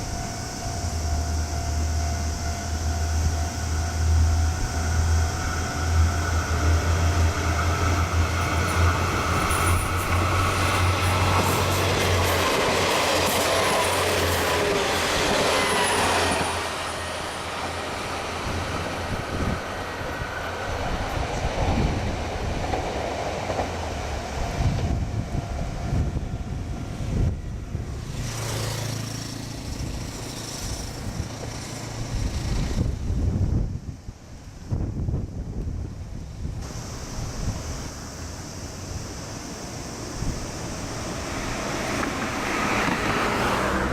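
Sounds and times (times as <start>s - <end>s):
train wheels squealing: 0.0s - 22.0s, 27.9s - 33.0s
low train hum: 0.0s - 43.9s
wheels clacking on rails: 5.2s - 33.2s, 39.1s - 43.9s.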